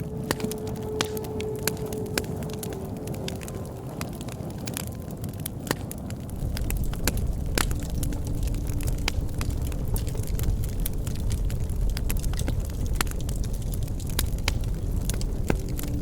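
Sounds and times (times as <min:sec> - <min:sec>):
faint steady whistle: 0:00.0 - 0:04.7
low rumble of flame: 0:00.0 - 0:16.0
wood fire popping and crackling: 0:00.0 - 0:16.0.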